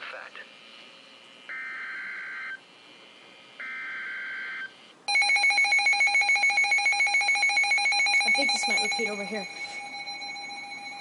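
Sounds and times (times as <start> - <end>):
rapidly pulsing multi-tone alarm beep: 3.6 - 11.0.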